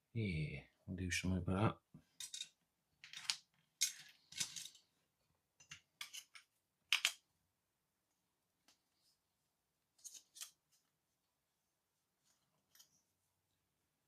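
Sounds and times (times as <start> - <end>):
small metal parts clinking: 2.2 - 4.9.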